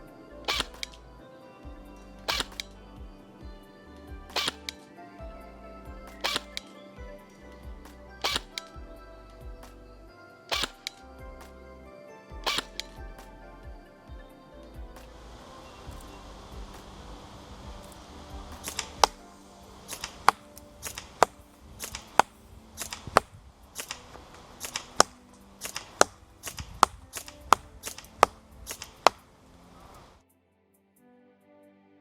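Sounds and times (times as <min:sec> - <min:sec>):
background music: 0:00.0 - 0:32.0
airsoft gun firing: 0:00.4 - 0:01.0, 0:02.3 - 0:02.8, 0:04.3 - 0:04.8, 0:06.1 - 0:06.7, 0:08.2 - 0:08.7, 0:10.5 - 0:11.0, 0:12.4 - 0:12.9, 0:19.8 - 0:24.0, 0:24.6 - 0:29.2.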